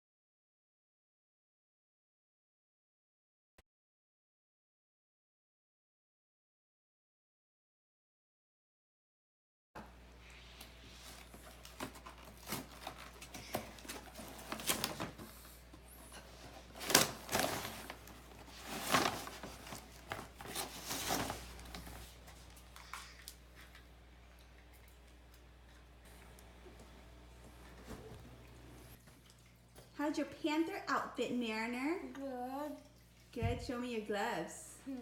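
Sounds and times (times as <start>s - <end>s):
packaging rustling and ripping: 11.0s - 15.4s, 16.4s - 23.2s.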